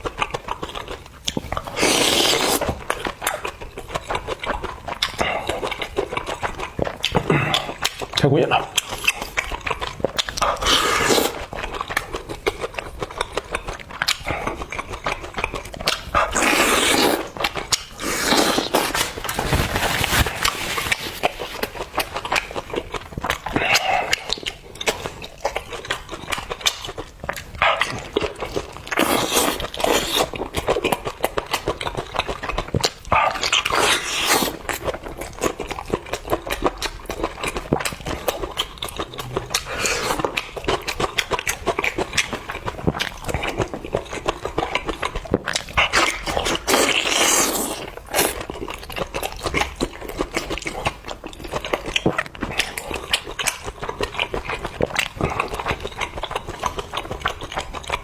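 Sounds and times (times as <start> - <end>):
wet chewing and smacking: 0.0 - 58.0
slurping: 0.8 - 25.7, 26.8 - 32.1, 32.8 - 48.7.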